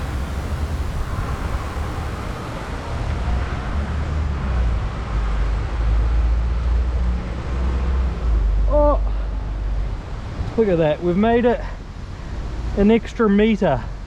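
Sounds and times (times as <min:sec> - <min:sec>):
wind buffeting microphone: 0:00.0 - 0:05.9, 0:09.6 - 0:14.0.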